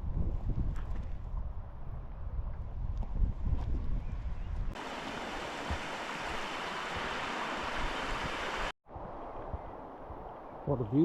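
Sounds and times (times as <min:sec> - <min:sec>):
wind rumble on microphone: 0:00.0 - 0:04.8, 0:07.0 - 0:11.0
water rushing over rocks: 0:04.8 - 0:08.7.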